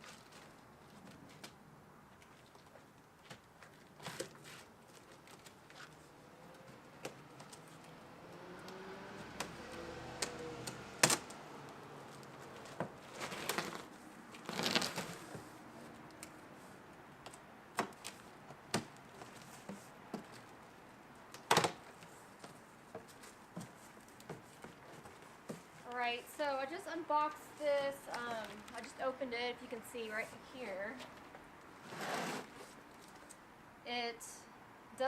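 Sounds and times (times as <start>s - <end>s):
cardboard box being opened: 13.1s - 15.3s.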